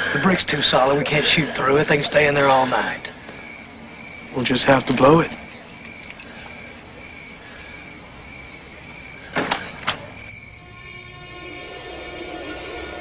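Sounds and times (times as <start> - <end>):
crickets chirping: 0.0 - 13.0
film score held tones: 0.0 - 13.0
sharp cracks: 9.3 - 10.1.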